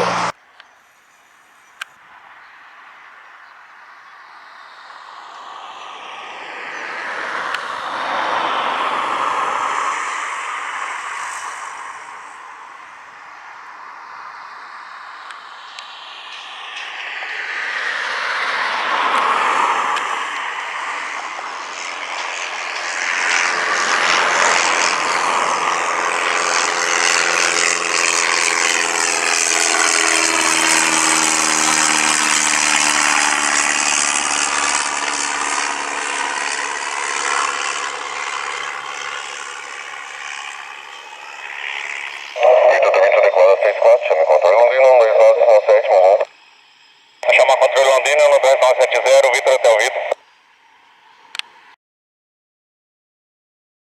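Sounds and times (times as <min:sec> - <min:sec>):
aircraft engine passing: 0:00.0 - 0:51.8.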